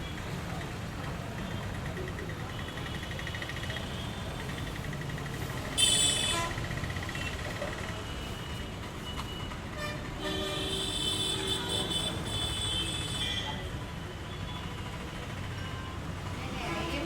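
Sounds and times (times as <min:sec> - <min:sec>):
traffic engines and tyres rumbling: 0:00.0 - 0:17.0
vehicle horns honking: 0:05.8 - 0:06.7, 0:09.7 - 0:13.6.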